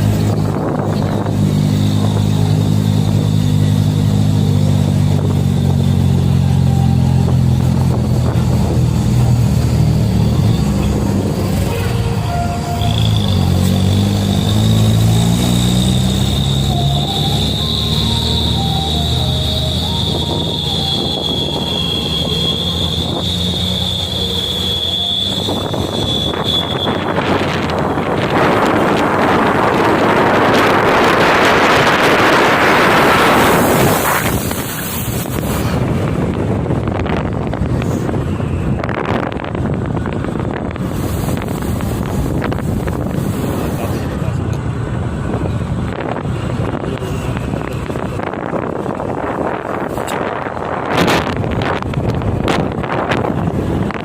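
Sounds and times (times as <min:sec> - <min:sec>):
high-pitched whine: 0:00.0 - 0:36.1
truck engine running: 0:00.0 - 0:54.0.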